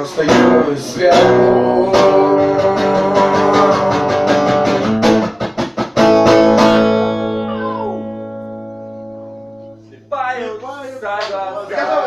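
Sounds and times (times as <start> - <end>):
guitar strumming: 0.0 - 10.5.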